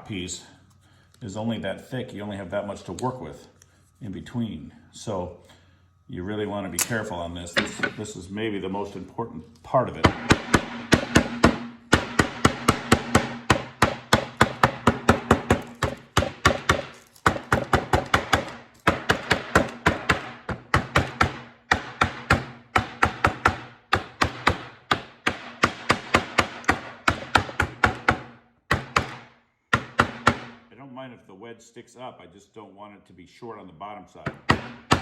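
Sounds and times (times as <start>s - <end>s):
hammer tapping on wood: 10.0s - 30.6s.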